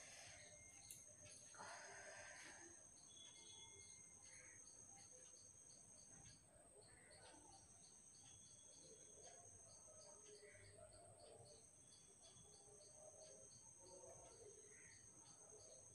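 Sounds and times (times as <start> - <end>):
faint insect chirping: 0.0 - 15.9.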